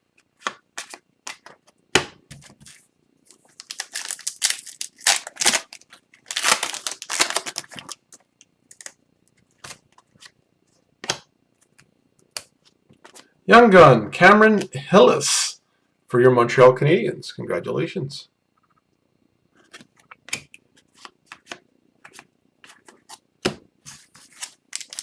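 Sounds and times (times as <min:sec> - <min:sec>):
cards flicking and rustling: 0:00.4 - 0:09.0, 0:19.7 - 0:25.0
wrappers tearing and crinkling: 0:03.3 - 0:08.0, 0:08.7 - 0:08.9, 0:24.3 - 0:25.0.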